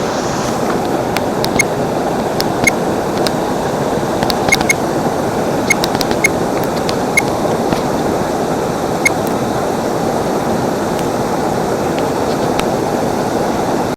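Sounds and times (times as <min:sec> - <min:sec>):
flowing water: 0:00.0 - 0:13.9.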